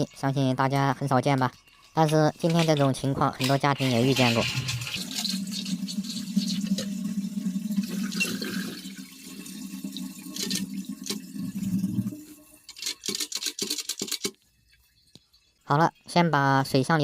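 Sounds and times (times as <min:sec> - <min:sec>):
water running in toilet cistern: 0:00.0 - 0:12.8.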